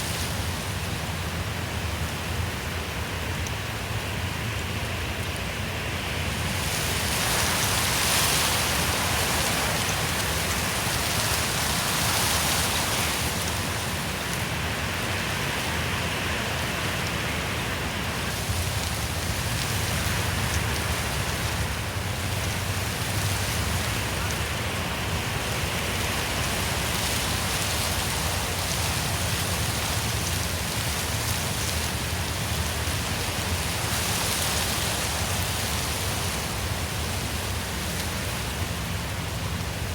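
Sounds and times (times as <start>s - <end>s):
wind through trees: 0.0s - 39.9s.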